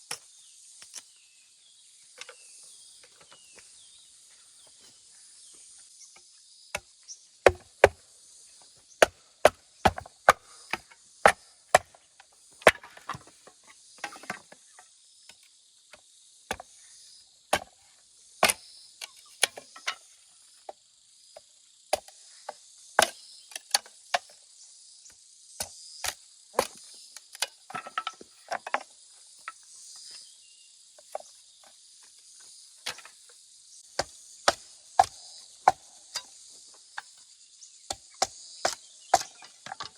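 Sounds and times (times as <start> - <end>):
insects chirring: 0.0 - 39.9
hand tool chopping: 7.5 - 8.0, 9.0 - 12.0, 12.7 - 13.3, 34.0 - 35.9.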